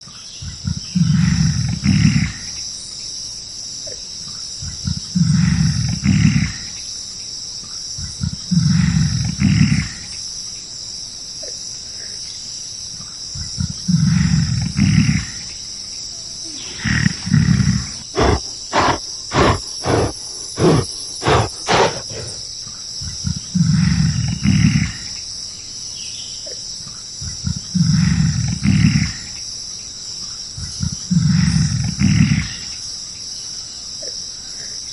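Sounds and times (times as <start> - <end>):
insects chorus: 0.0 - 34.9
gorilla roaring: 13.9 - 15.5, 16.5 - 22.5
short sharp pulses: 16.7 - 22.4.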